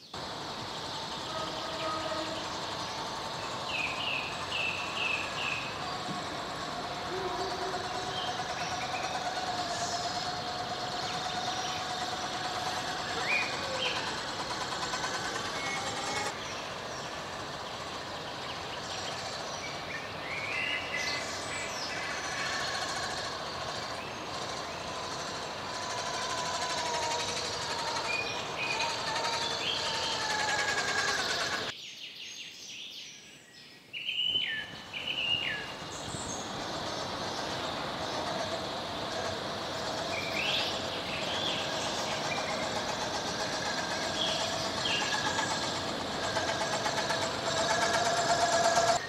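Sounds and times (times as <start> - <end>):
birds chirping: 0.0 - 31.8, 34.1 - 49.0
electric motor whining: 0.2 - 31.7, 35.4 - 49.0.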